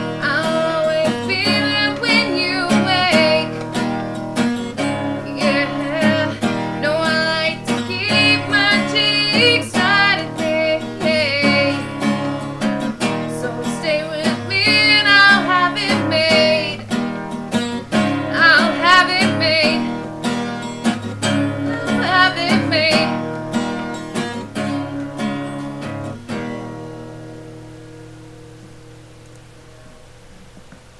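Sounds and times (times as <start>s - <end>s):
person singing: 0.0s - 3.9s, 5.1s - 12.3s, 13.0s - 16.9s, 18.0s - 20.0s, 21.2s - 23.4s
strummed acoustic guitar: 0.0s - 30.9s.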